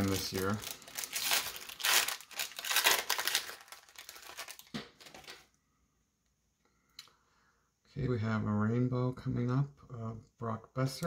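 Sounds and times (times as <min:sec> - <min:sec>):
foil wrapper tearing and crinkling: 0:00.0 - 0:05.4.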